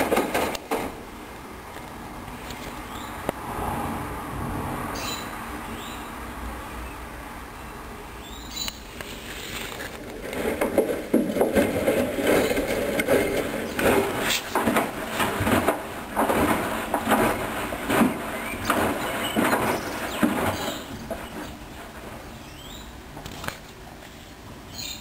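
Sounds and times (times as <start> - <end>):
washing machine drum tumbling: 10.2 - 22.3.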